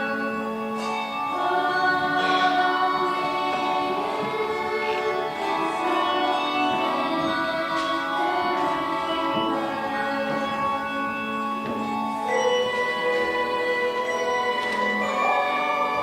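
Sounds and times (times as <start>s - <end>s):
choir singing held chords: 0.0s - 16.0s
instrumental accompaniment: 0.0s - 16.0s.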